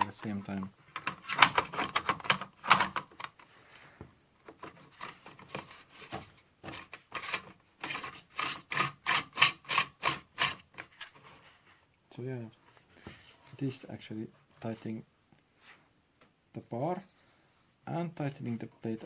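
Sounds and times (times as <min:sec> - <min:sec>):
knob turning with scraping strokes: 0:04.5 - 0:11.6.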